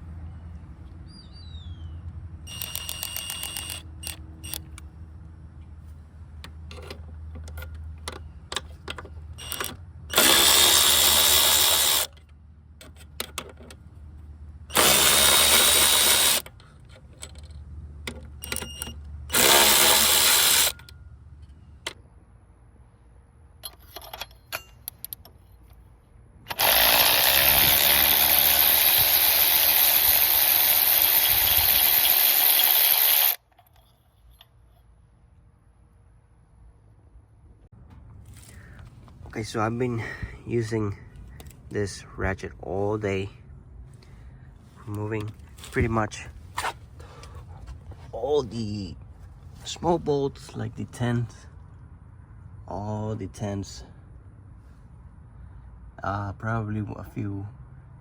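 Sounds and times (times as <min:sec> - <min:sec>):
electric ratchet running: 0:02.5 - 0:04.7, 0:09.4 - 0:12.2, 0:14.7 - 0:16.6, 0:19.3 - 0:20.9, 0:26.5 - 0:33.4
small clicks: 0:02.5 - 0:04.9
loud steady running noise: 0:14.7 - 0:16.6, 0:19.3 - 0:20.9.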